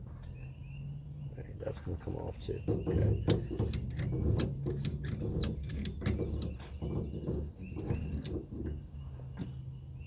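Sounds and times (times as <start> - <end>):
tools clicking and knocking: 2.6 - 8.8.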